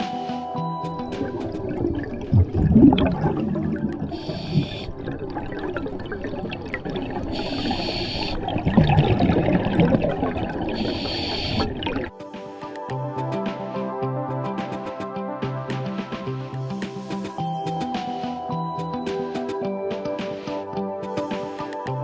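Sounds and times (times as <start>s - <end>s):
bubbles gurgling underwater: 0.9s - 12.1s
diver breathing through regulator: 4.0s - 5.3s, 7.2s - 9.0s, 10.5s - 12.1s.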